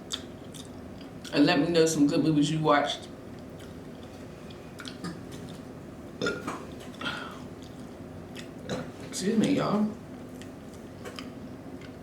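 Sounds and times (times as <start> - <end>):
wet mouth smacks: 4.8 - 5.2
burp: 6.2 - 6.6.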